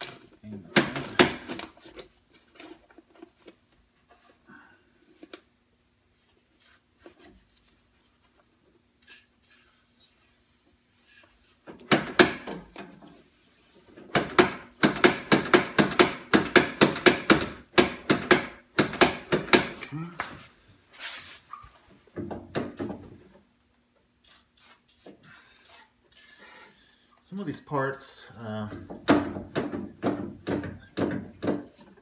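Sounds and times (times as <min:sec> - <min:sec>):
aerosol spray hiss: 0:09.0 - 0:11.6, 0:13.0 - 0:13.8, 0:24.2 - 0:26.7.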